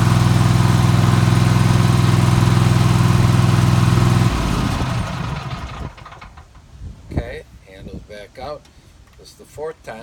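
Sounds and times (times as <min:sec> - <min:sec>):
riding mower engine running: 0:00.0 - 0:06.7.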